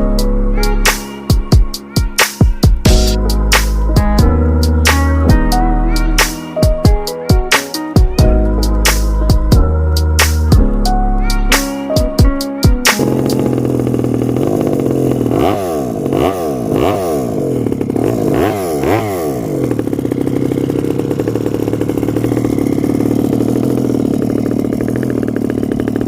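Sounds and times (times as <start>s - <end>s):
rc car motor running: 13.0s - 26.0s.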